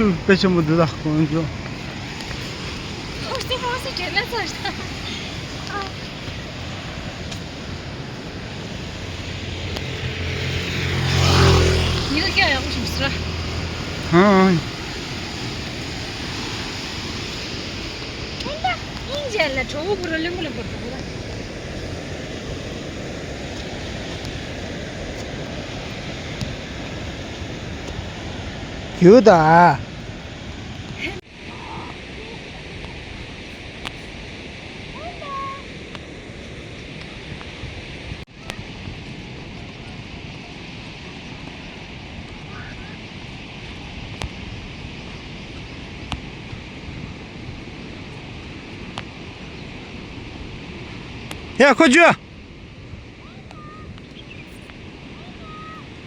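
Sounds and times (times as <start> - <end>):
rain falling: 0.0 - 31.2
steady outdoor hiss: 0.0 - 56.0.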